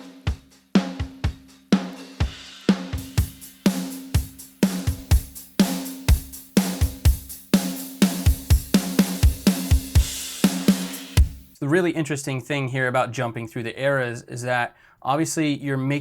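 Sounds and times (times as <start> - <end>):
drum kit groove: 0.0 - 11.6.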